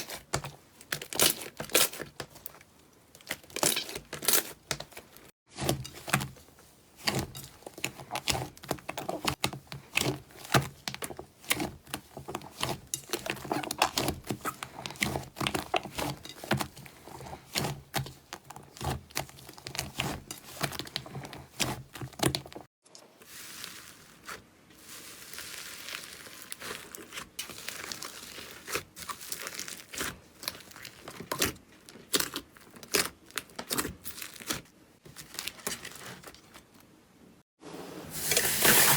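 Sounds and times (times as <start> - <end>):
slime crackling and popping: 25.0 - 34.7.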